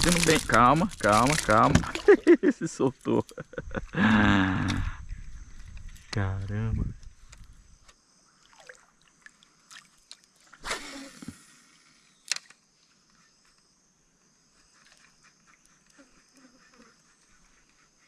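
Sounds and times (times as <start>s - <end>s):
rustling: 0.0s - 2.4s
insects buzzing: 0.0s - 18.0s.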